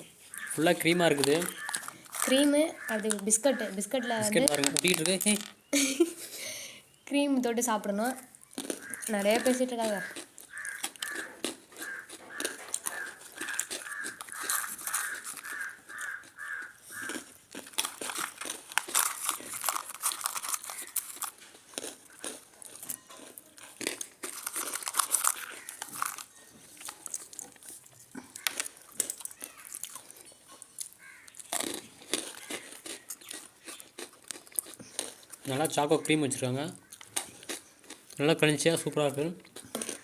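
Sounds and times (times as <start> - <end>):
crisp crunching of biscuits: 0.0 - 6.2, 8.0 - 40.0
packaging crinkling: 0.3 - 3.3, 4.0 - 5.9, 11.8 - 30.2.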